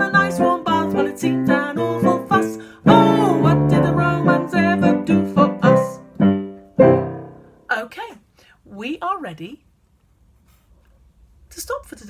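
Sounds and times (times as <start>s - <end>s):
person singing children's song: 0.0s - 6.1s
piano accompaniment: 0.0s - 7.6s.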